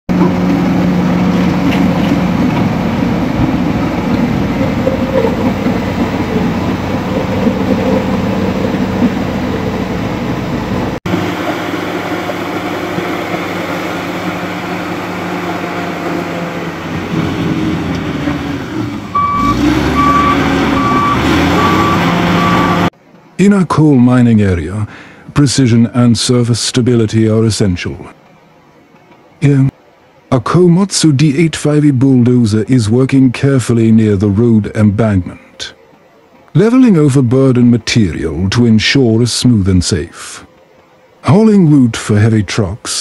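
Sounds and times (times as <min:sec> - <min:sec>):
bulldozer diesel engine running: 0:00.1 - 0:22.9
reversing alarm beeping: 0:04.2 - 0:08.4, 0:19.1 - 0:22.9.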